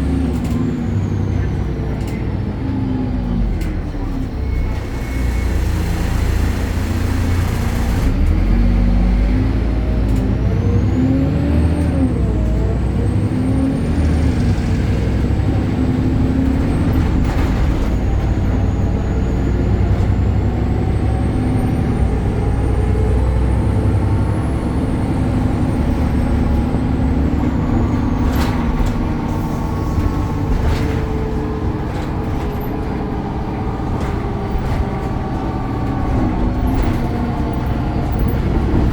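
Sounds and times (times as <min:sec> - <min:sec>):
bus diesel engine running: 0:00.0 - 0:38.9.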